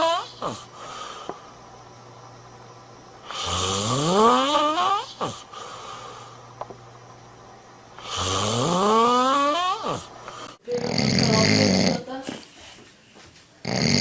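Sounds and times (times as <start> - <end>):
man snoring: 0.0 - 1.4, 3.2 - 6.4, 8.0 - 12.0, 13.6 - 14.0.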